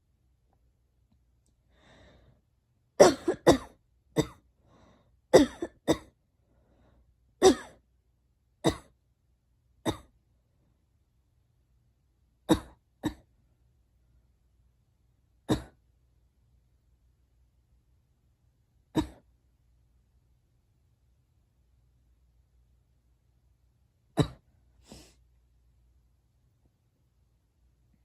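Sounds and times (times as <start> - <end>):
girl coughing: 3.0 - 4.4, 5.4 - 6.1, 7.4 - 7.8, 12.5 - 13.2, 15.5 - 15.8, 19.0 - 19.2.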